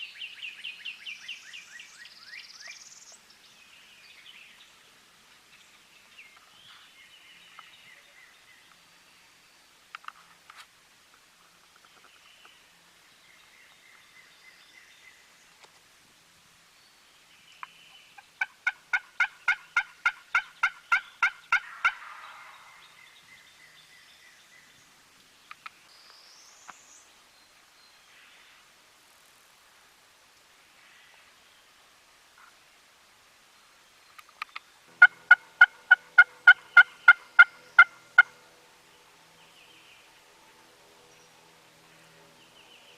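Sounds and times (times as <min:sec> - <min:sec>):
faint songbird chirps: 0:00.0 - 0:10.2, 0:11.5 - 0:15.6, 0:16.6 - 0:28.8, 0:30.5 - 0:42.9
turkey yelping: 0:18.4 - 0:22.2, 0:35.0 - 0:38.4.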